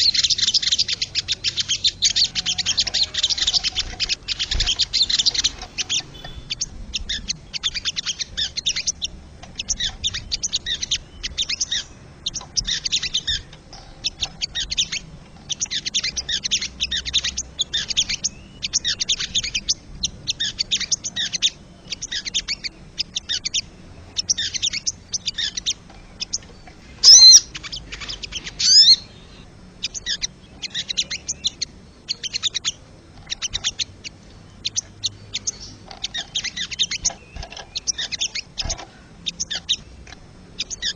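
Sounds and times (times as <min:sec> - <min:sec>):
jay sliding calls: 0:00.0 - 0:09.0, 0:26.8 - 0:31.6
jay rattling calls: 0:00.0 - 0:40.9.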